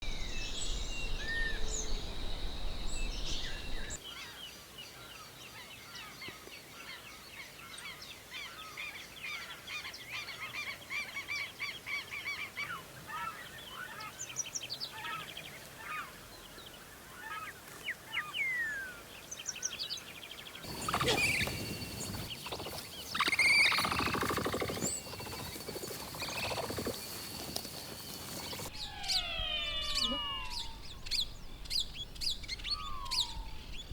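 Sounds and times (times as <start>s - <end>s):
small birds chirping and trilling: 0.0s - 10.9s, 17.8s - 33.9s
low bird calls: 20.6s - 33.9s.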